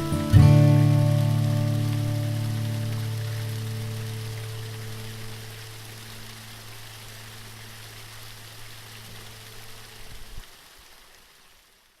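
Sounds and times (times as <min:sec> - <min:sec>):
background music low note: 0:00.0 - 0:05.7
small waterfall rushing: 0:00.0 - 0:12.0.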